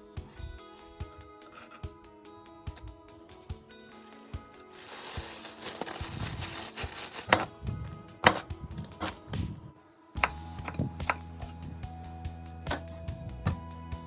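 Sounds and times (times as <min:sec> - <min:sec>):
background music: 0:00.0 - 0:14.0
knife chopping on cutting board: 0:08.2 - 0:09.2.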